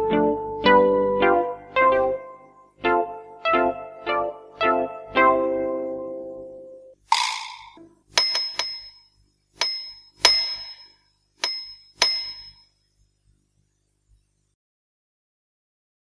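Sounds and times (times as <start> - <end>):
small metal bell dings: 7.6 - 12.7.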